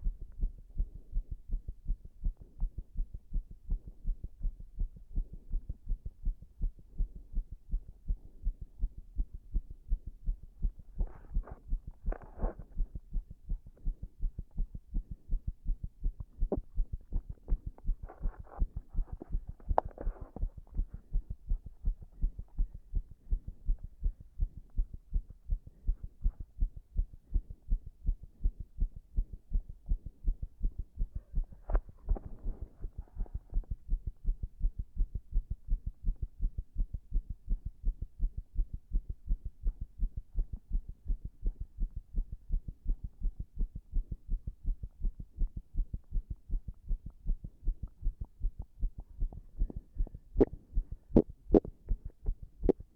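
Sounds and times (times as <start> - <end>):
heartbeat: 0.0 - 52.9
scratchy rub: 18.0 - 20.6.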